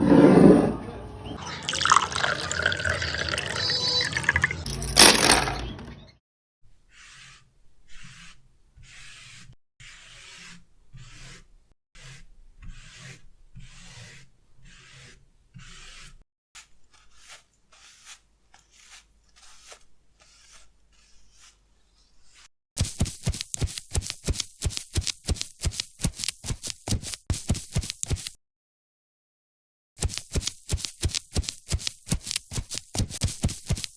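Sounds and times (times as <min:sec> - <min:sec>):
paper rubbing: 0:06.9 - 0:28.4, 0:30.0 - 0:33.9
sharp paper crinkling: 0:30.0 - 0:33.9.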